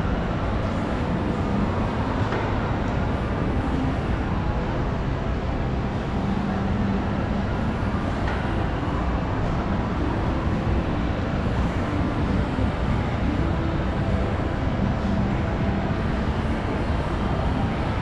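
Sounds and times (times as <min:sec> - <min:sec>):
shopping mall ambience: 0:00.0 - 0:18.0.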